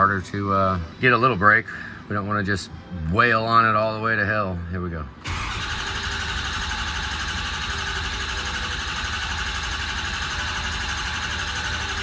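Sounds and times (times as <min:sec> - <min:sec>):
starter cranking diesel engine: 0:05.2 - 0:12.0.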